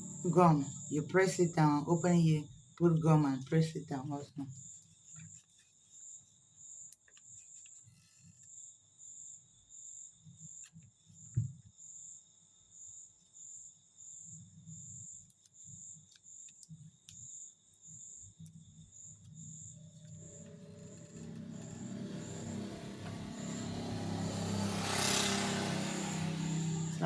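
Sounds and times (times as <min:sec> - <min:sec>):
cricket chirping: 0:08.5 - 0:27.0.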